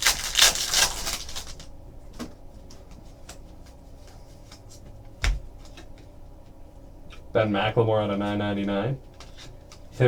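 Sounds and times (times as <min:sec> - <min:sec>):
trading cards clicking and rustling: 0:00.0 - 0:01.7.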